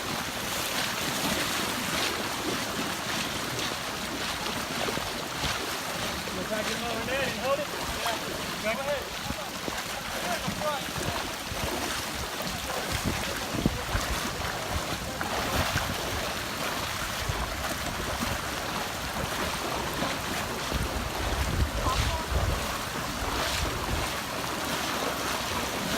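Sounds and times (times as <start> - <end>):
rushing floodwater: 0.0 - 25.9
wind buffeting microphone: 9.0 - 24.3.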